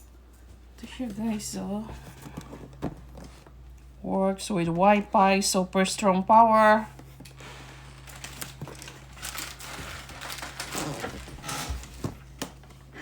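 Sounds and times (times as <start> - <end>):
packaging crinkling: 7.9 - 12.6.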